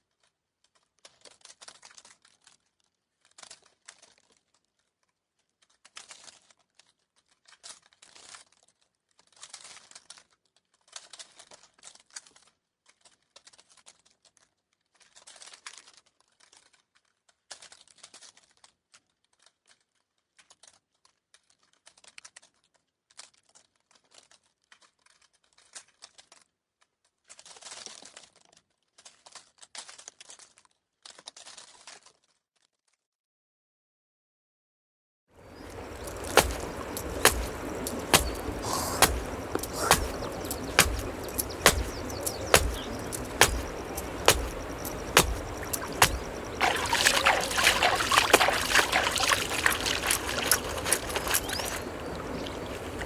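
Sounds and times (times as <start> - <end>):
dry rustling and crackling: 35.5 - 53.0.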